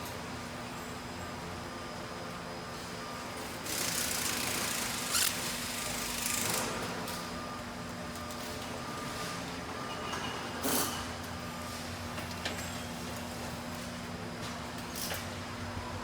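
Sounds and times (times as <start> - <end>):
machinery hum: 0.0 - 16.0
tool noise bursts: 3.6 - 7.0.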